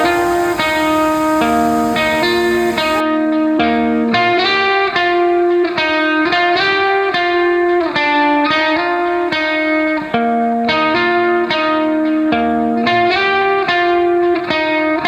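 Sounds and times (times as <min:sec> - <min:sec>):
guitar picked melody: 0:00.0 - 0:03.0.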